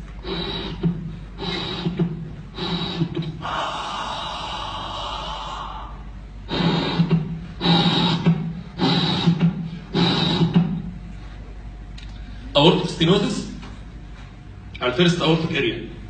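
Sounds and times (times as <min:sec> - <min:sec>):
heartbeat with murmur: 0:00.0 - 0:11.2.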